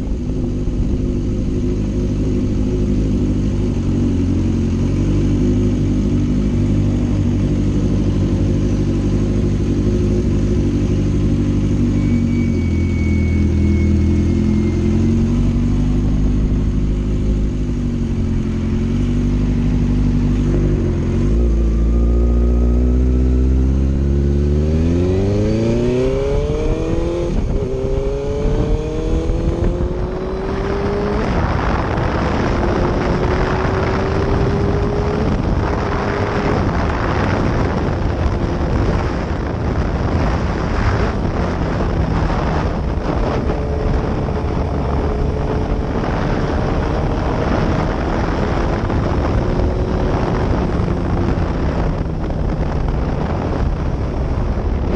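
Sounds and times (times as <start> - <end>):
motorcycle engine accelerating: 0.0 - 54.9
wind rush on microphone: 0.0 - 54.9.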